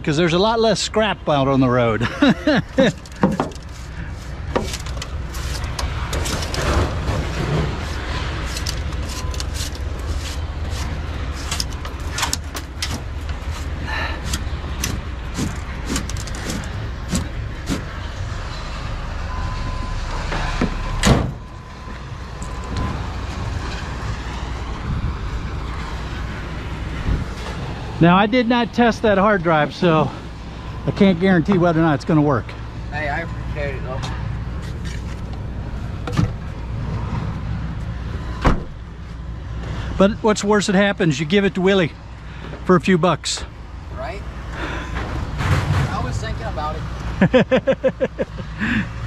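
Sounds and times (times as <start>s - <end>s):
knocks and clanks: 2.8s - 3.8s, 4.5s - 9.8s, 11.4s - 18.0s, 44.9s - 46.0s.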